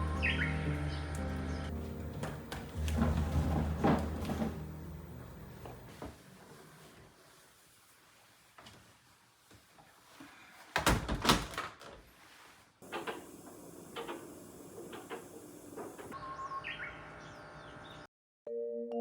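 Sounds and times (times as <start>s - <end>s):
sliding door rumbling on track: 2.3s - 5.9s
small birds chirping: 15.2s - 18.1s.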